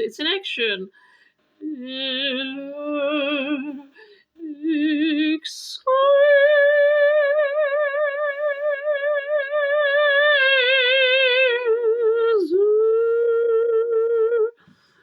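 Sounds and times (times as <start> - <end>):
audible breath: 1.0 - 1.6, 3.9 - 4.4, 14.6 - 15.0
woman singing operatically: 1.6 - 14.6.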